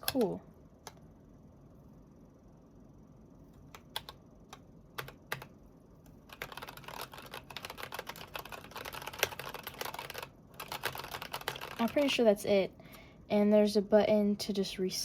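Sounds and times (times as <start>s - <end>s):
mechanical keyboard keys clacking: 5.0s - 5.5s, 6.3s - 12.0s.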